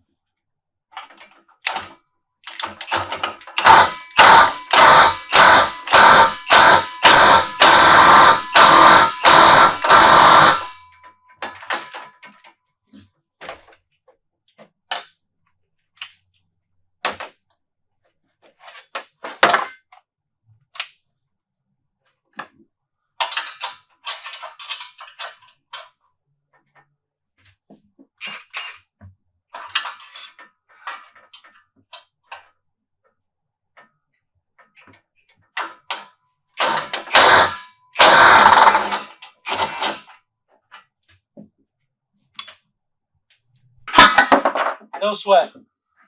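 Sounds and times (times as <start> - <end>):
tools clattering: 2.5 - 10.8, 36.6 - 40.1, 43.9 - 44.9
impact wrench hammering: 2.6 - 10.9, 36.6 - 40.0, 43.9 - 44.4.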